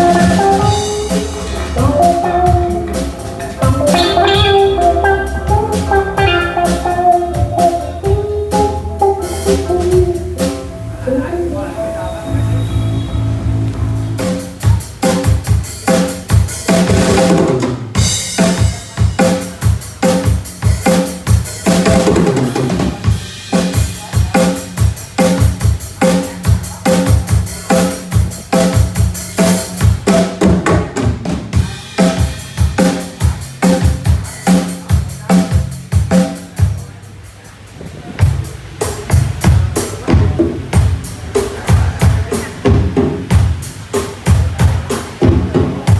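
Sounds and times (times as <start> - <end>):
drum kit beat: 0.0 - 10.9, 12.5 - 45.9
band playing: 0.0 - 36.8.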